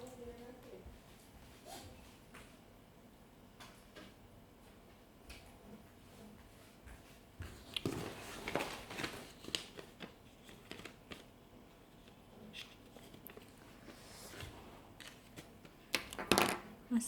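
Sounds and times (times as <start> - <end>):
packaging rustling: 7.6 - 16.3.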